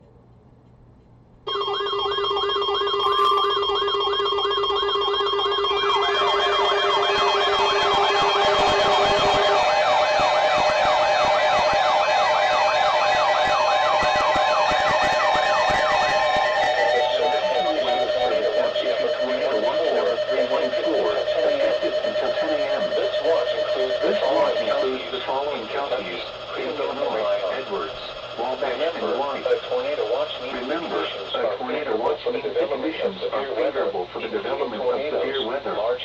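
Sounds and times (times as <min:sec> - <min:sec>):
steady alarm tones: 0:01.4 - 0:35.4
fast yelping siren: 0:01.5 - 0:31.2.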